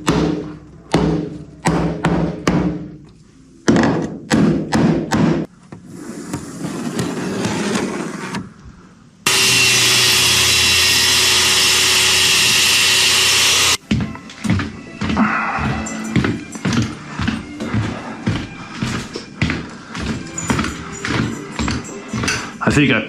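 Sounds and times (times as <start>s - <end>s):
power saw cutting: 9.3s - 13.8s.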